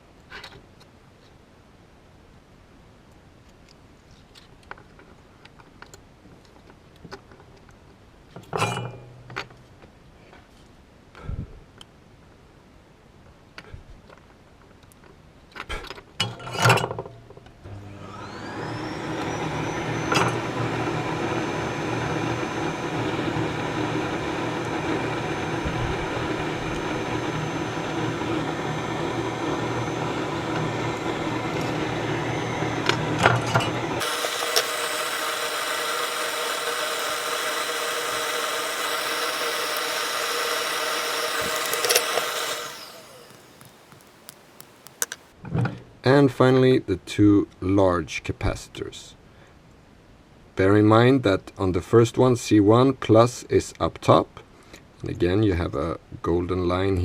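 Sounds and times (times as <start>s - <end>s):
small electric motor whirring: 33.9s - 45.3s
clicks: 34.0s - 45.3s.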